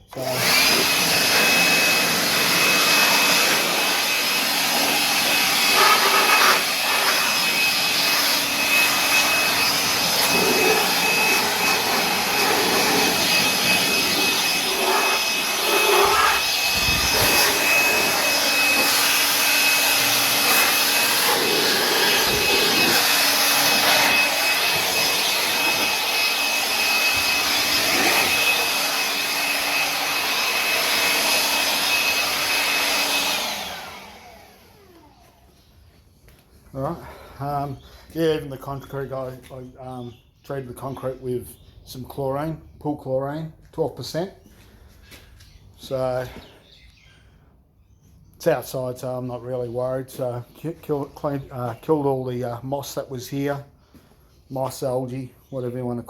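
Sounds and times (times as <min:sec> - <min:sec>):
electric air blower whining: 0:00.0 - 0:35.8.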